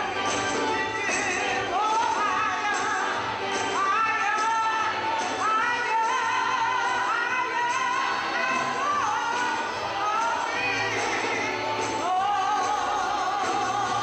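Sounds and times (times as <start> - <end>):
gospel band playing: 0.0 - 14.0
gospel choir singing: 0.0 - 14.0.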